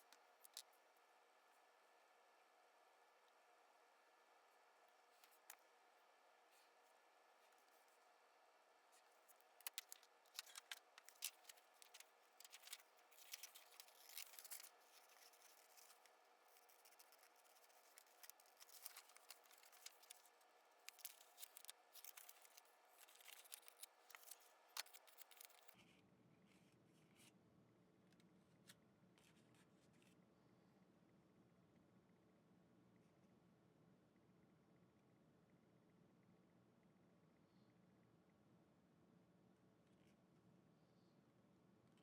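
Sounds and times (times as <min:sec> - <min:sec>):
scissors cutting paper: 0:09.6 - 0:20.3, 0:20.9 - 0:25.8.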